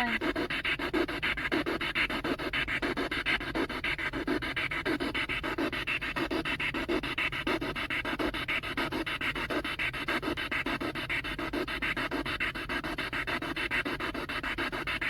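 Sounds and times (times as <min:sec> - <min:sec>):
pulsing radio static: 0:00.0 - 0:00.3.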